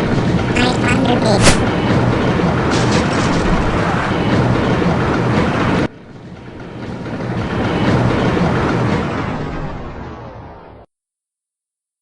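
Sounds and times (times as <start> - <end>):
roller coaster rumbling on track: 0.0 - 10.8.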